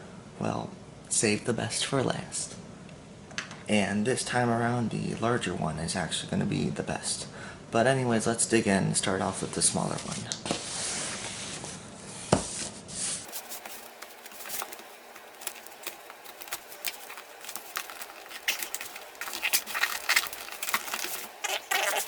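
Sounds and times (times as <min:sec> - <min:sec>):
packaging tearing and crinkling: 0:13.3 - 0:22.0.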